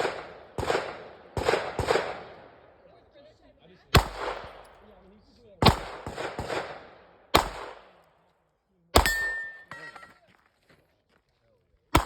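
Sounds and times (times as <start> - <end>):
pistol shots: 0.0 - 2.8, 3.9 - 8.1, 8.9 - 9.9.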